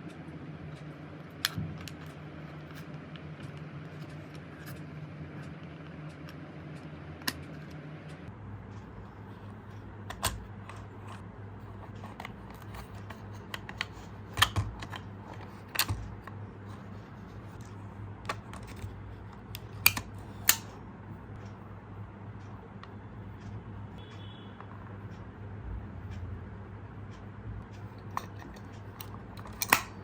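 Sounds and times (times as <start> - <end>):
steady low hum: 0.0 - 30.0
plastic toy car clicks: 11.8 - 16.3, 28.2 - 30.0.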